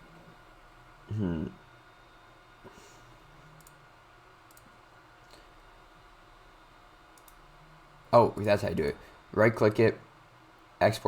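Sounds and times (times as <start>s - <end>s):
low room hum: 0.0s - 11.0s
faint mouse clicks: 3.6s - 3.8s, 4.4s - 5.5s, 7.1s - 7.4s.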